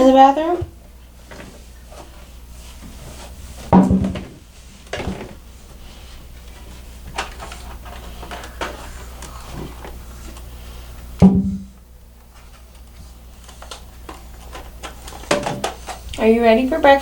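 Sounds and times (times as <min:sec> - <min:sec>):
cabinet door knocks and clacks: 0:03.7 - 0:04.4, 0:11.2 - 0:11.7.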